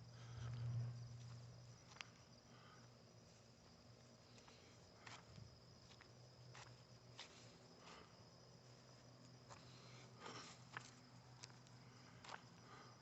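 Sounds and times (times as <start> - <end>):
low hum: 0.0 - 2.9.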